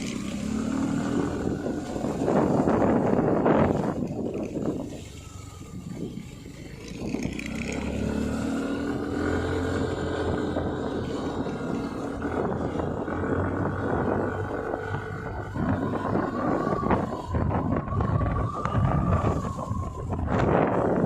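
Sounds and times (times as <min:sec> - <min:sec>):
motorcycle engine running: 0:00.0 - 0:21.0
road and wind noise: 0:00.0 - 0:21.0.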